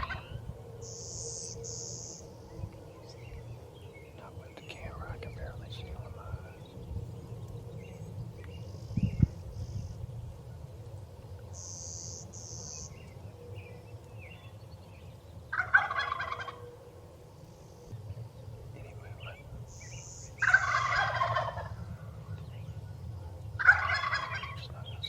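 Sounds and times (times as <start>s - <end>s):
turkey gobbling: 0.0s - 0.3s, 15.5s - 16.7s, 20.4s - 21.8s, 23.6s - 24.7s
small bird chirps: 11.6s - 14.8s.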